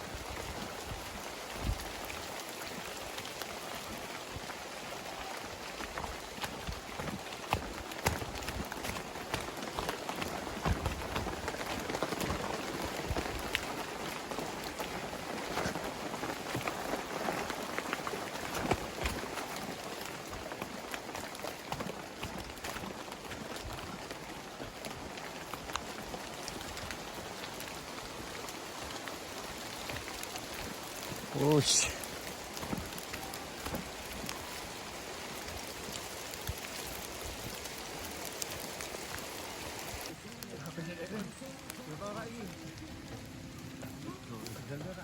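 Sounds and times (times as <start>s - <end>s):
steady rainfall: 0.0s - 45.0s
raindrop hits: 4.2s - 24.1s.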